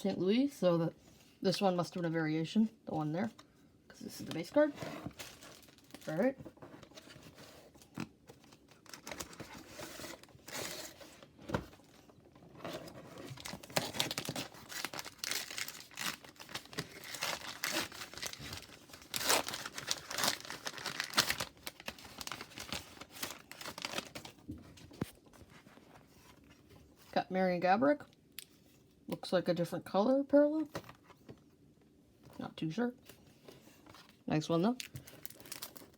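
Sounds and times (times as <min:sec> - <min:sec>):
wrapper crinkling and tearing: 0:05.1 - 0:06.3, 0:08.5 - 0:11.0, 0:13.2 - 0:24.4, 0:34.8 - 0:35.9.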